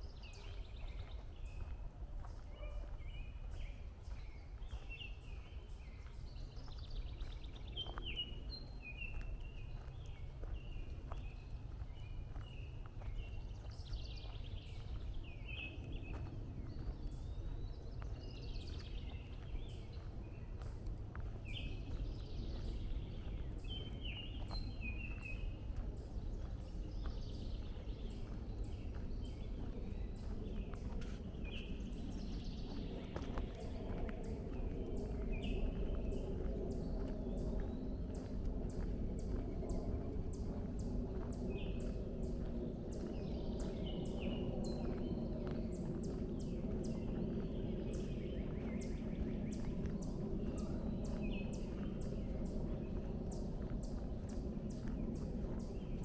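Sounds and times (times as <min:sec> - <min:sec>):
footsteps on a trail: 0:00.0 - 0:56.0
low rumble: 0:03.7 - 0:56.0.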